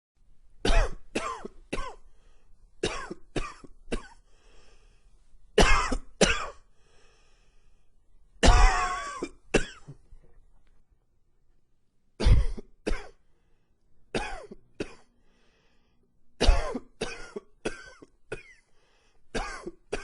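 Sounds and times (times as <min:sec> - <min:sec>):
man coughing: 0:00.7 - 0:02.0, 0:02.8 - 0:04.2, 0:05.6 - 0:06.6, 0:08.4 - 0:10.0, 0:14.2 - 0:15.1, 0:16.4 - 0:18.6, 0:19.4 - 0:20.0.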